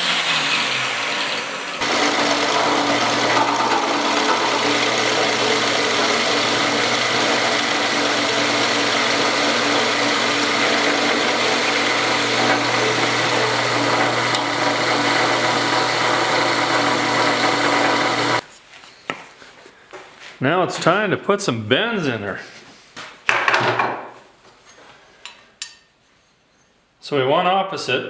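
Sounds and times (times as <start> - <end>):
power tool motor humming: 0.0 - 18.4.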